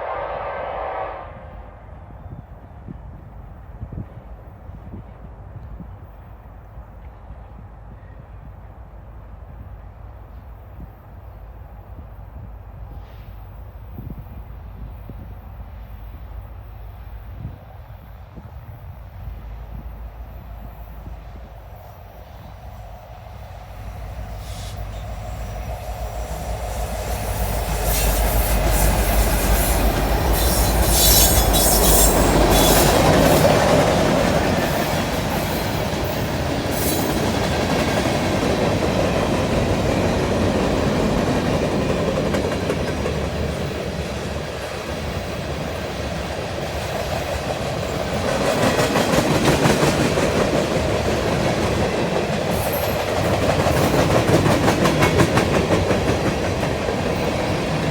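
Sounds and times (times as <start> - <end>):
diesel locomotive engine rumble: 0.0 - 57.9
train wheels squealing: 10.3 - 44.0, 52.1 - 57.9.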